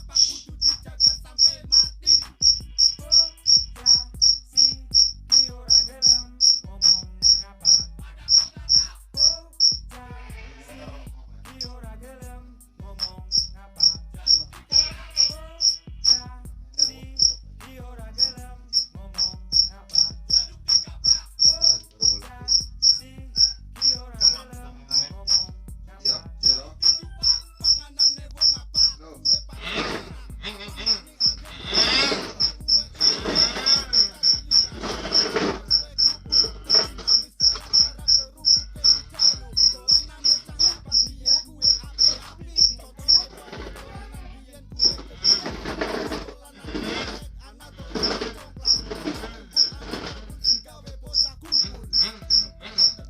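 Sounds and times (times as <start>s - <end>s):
faint background music: 0.0s - 53.0s
cricket chirping: 1.0s - 7.8s, 18.2s - 24.4s, 32.4s - 43.2s.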